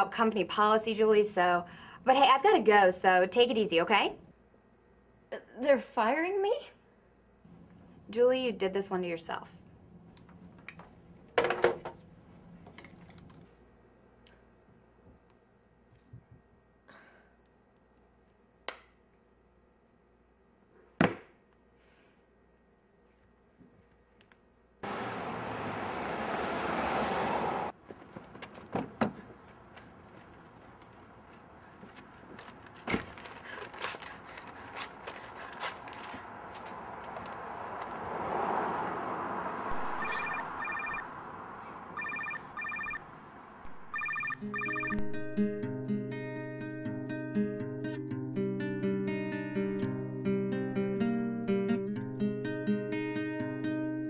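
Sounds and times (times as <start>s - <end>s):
soft rushing noise: 35.7s - 42.0s
telephone ringing: 40.0s - 41.1s, 42.0s - 43.1s, 43.9s - 45.0s.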